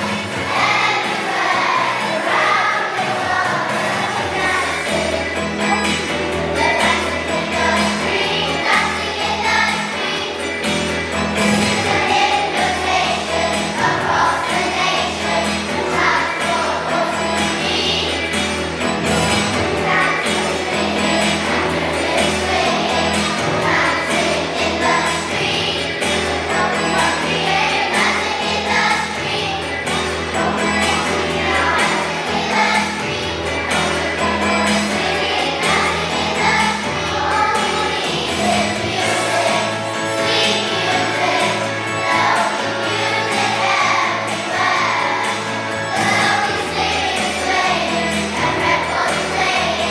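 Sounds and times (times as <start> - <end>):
children's choir singing: 0.0 - 49.9
musical accompaniment with bass: 0.0 - 49.9.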